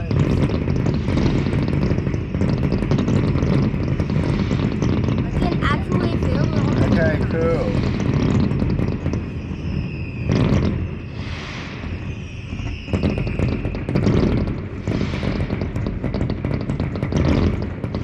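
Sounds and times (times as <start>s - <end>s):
fireworks booming: 0.0s - 18.0s
fireworks crackling: 0.0s - 18.0s
high whistle sliding down: 9.1s - 14.2s.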